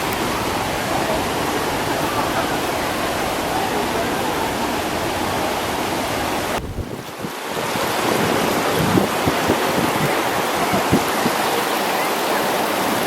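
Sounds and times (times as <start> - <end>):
rushing river water: 0.0 - 13.0
wind buffeting microphone: 4.4 - 11.7.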